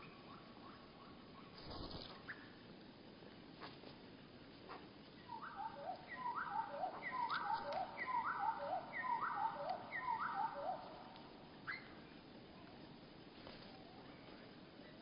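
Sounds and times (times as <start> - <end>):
slowed songbird song: 0.0 - 2.8, 5.1 - 12.4.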